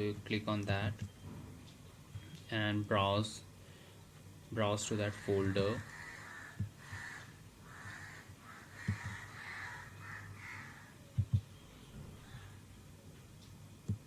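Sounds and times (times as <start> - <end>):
birds calling: 5.0 - 12.6.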